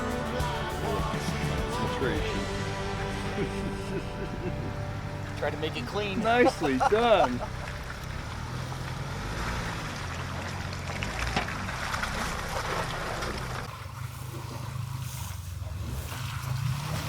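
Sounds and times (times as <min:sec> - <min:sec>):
off-road vehicle engine running: 0:00.0 - 0:17.0
water splashing and trickling: 0:04.7 - 0:17.0.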